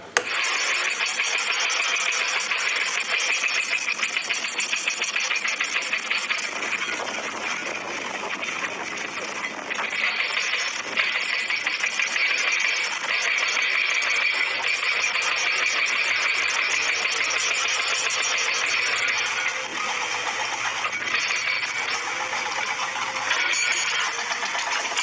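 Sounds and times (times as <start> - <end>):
toy excavator buzzing: 0.0 - 25.0.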